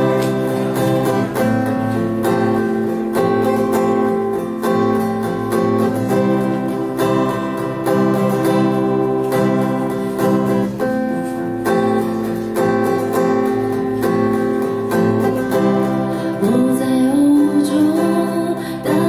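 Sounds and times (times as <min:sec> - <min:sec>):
acoustic guitar strumming chords: 0:00.0 - 0:19.0
person singing: 0:16.0 - 0:19.0.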